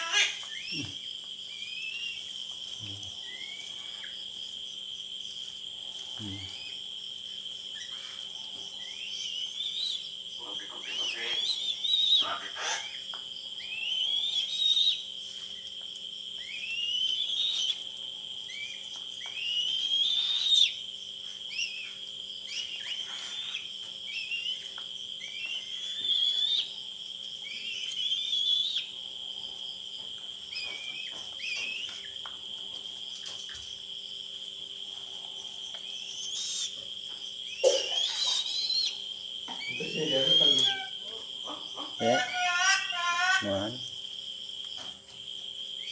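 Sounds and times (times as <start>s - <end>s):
eagle chick whistled calls: 1.5s - 2.3s, 8.8s - 13.0s, 13.6s - 15.0s, 16.4s - 17.9s, 18.5s - 20.8s, 21.5s - 26.8s, 27.4s - 28.9s, 30.5s - 32.2s, 35.8s - 36.8s, 37.4s - 41.1s.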